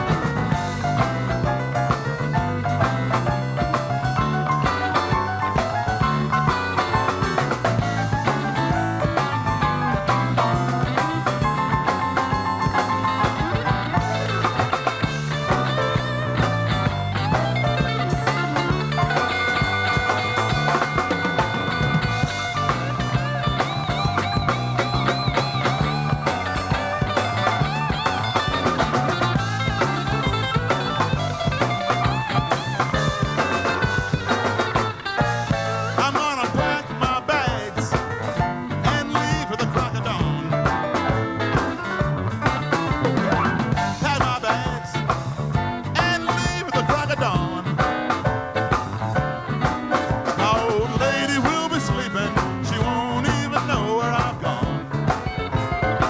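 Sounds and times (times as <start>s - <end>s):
lead guitar bending notes: 0.0s - 56.0s
rock band instrumental: 0.0s - 56.0s.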